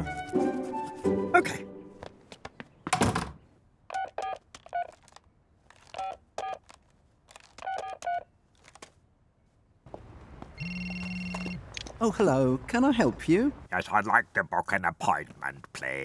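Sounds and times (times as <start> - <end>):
telephone keypad beeps: 10.6 - 11.6.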